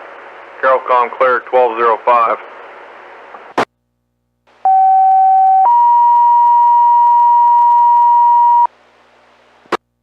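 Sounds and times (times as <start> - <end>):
radio hiss: 0.5 - 3.7
two-tone pager alert tones: 4.7 - 8.7.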